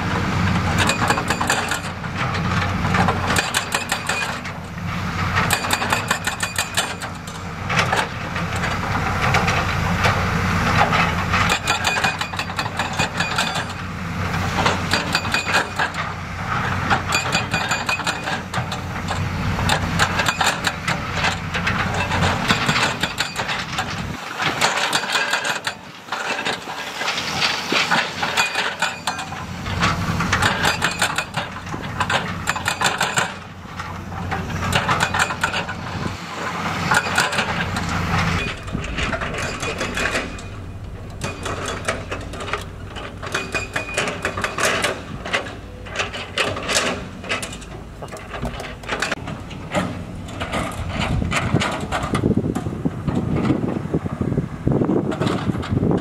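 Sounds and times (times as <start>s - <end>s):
diesel machinery running: 0.0s - 56.0s.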